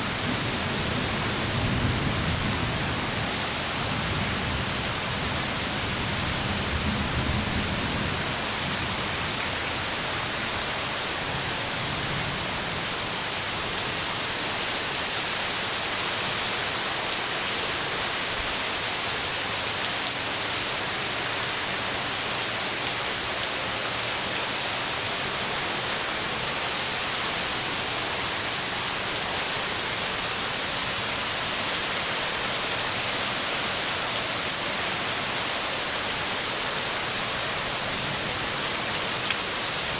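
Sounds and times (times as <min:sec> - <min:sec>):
heavy rainfall: 0:00.0 - 0:39.9.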